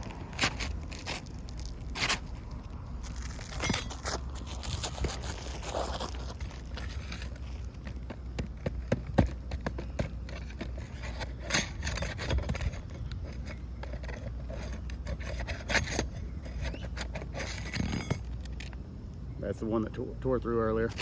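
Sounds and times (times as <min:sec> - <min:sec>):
tools scraping shingles: 0:00.0 - 0:18.7
tools tapping on shingles: 0:07.8 - 0:14.3.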